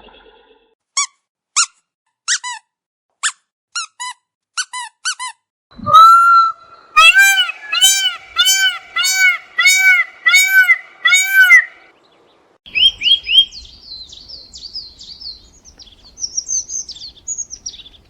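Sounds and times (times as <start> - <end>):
bird chirps: 5.8 - 12.1, 12.7 - 18.0
rise-and-fall bird calls: 5.8 - 12.1.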